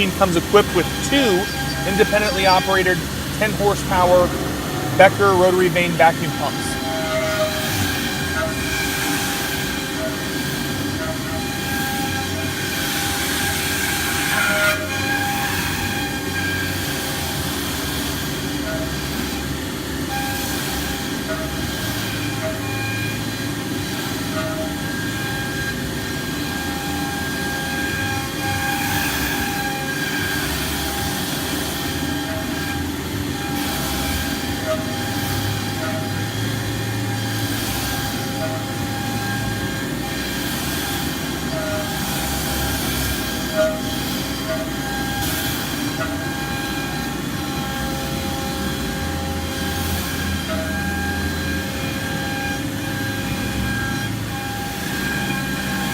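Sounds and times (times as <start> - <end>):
rushing noise: 0.0 - 8.2
whining tones: 0.0 - 13.6
cnc router machining hum: 0.0 - 55.9.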